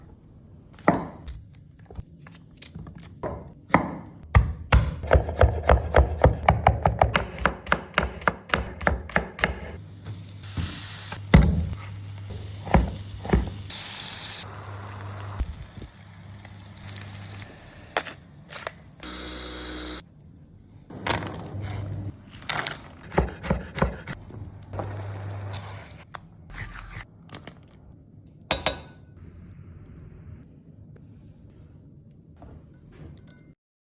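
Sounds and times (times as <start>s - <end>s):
knife chopping on wooden board: 3.3s - 9.8s, 12.6s - 13.6s, 23.0s - 24.2s.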